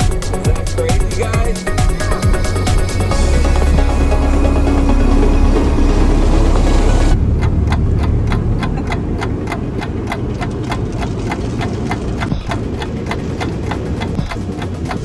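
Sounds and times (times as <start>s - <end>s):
low engine rumble: 0.0s - 11.9s
rapid ticking: 0.0s - 15.0s.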